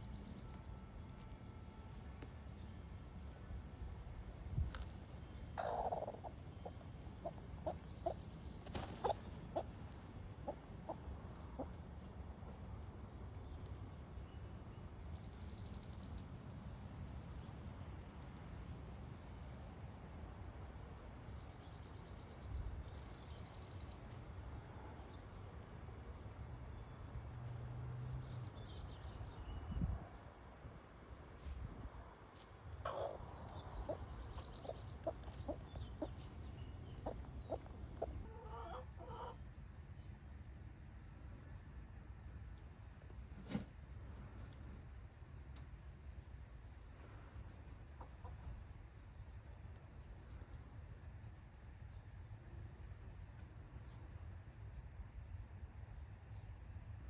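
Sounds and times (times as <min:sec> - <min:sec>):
hen clucking: 0:05.6 - 0:08.2, 0:08.8 - 0:09.8, 0:10.4 - 0:11.8, 0:32.8 - 0:39.4.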